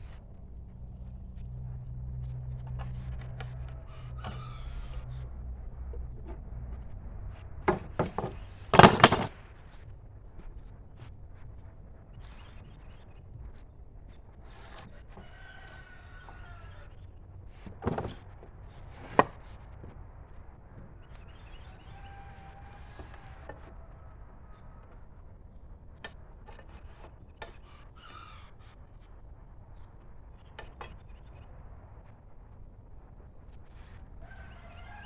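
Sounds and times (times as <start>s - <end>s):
handling wooden boards and screws: 7.7s - 9.4s, 17.6s - 19.4s
heavy knock: 7.7s - 9.4s
sharp wooden clack: 7.7s - 9.4s.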